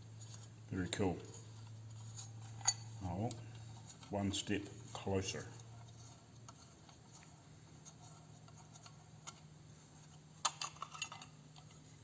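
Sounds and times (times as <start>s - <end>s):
faint steady hum: 0.0s - 12.0s
small hard parts clicking: 4.9s - 11.9s.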